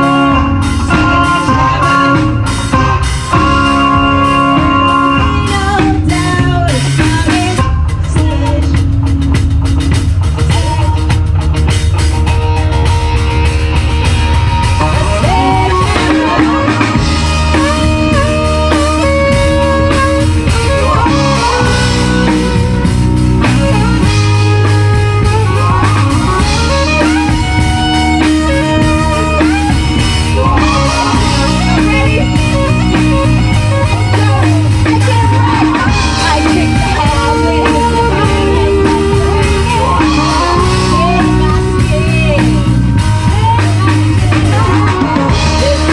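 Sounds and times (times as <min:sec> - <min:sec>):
melodic guitar line: 0:00.0 - 0:45.9
rock band music: 0:00.0 - 0:45.9.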